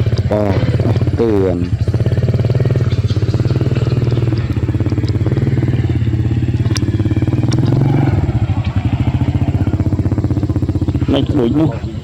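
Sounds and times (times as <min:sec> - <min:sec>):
engine running: 0:00.0 - 0:12.0
sharp clicks: 0:01.7 - 0:08.9.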